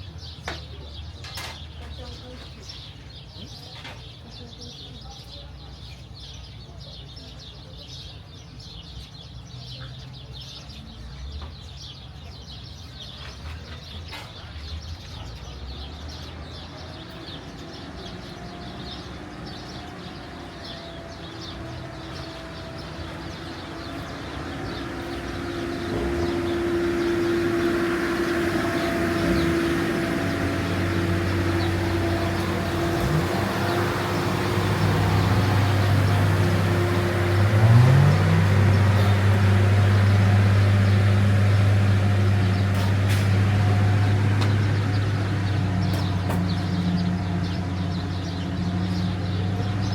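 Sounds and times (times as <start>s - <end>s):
small birds chirping: 0.0s - 49.9s
vehicle engine running: 14.8s - 49.9s.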